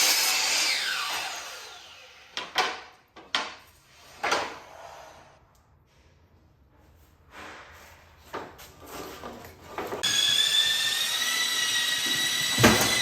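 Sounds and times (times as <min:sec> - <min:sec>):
power saw winding down: 0:10.0 - 0:13.0.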